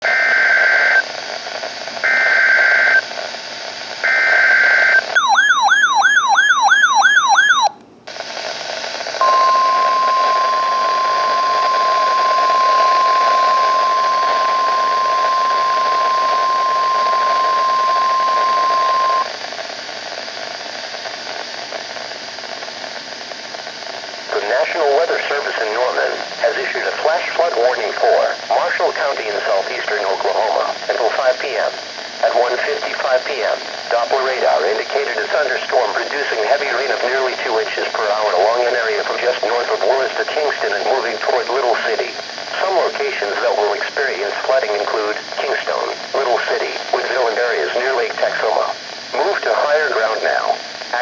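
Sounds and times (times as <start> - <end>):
radio static: 0.0 - 21.9, 22.5 - 51.0
steady warning alarm tone: 4.1 - 7.7, 9.2 - 19.3
warbling siren tone: 5.2 - 7.7.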